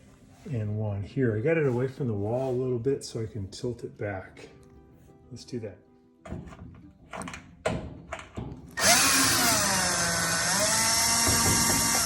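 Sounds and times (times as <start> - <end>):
power drill motor running: 8.8 - 12.0.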